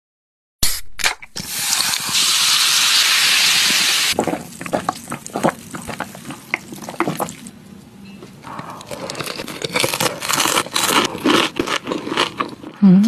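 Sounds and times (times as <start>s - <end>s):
crunchy chewing clicks: 4.1s - 12.8s
crispy fried chicken crackling: 9.0s - 12.8s.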